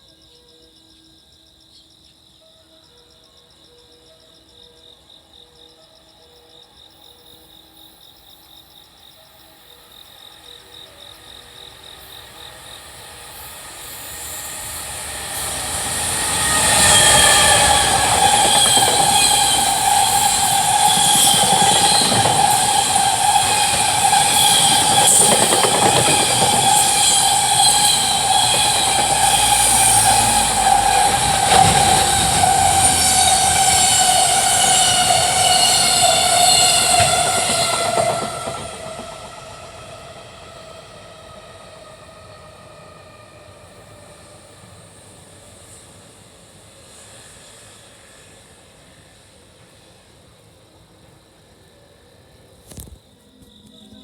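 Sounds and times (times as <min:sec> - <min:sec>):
freight train passing: 0:06.8 - 0:52.7
rail joint clicks: 0:12.2 - 0:41.0.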